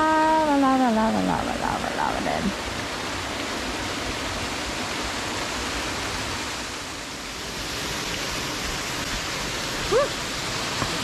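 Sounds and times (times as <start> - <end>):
waterfall rushing: 0.0 - 11.0.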